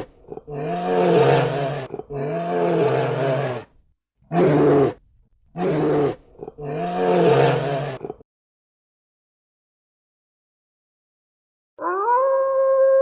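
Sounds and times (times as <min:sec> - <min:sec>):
large animal deep calls: 0:00.0 - 0:03.7, 0:05.6 - 0:08.2.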